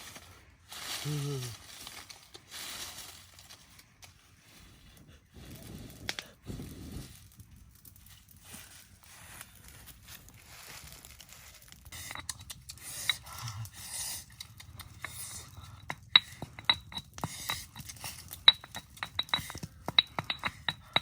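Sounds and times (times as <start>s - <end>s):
cooking utensils clinking and scraping: 11.9s - 21.0s.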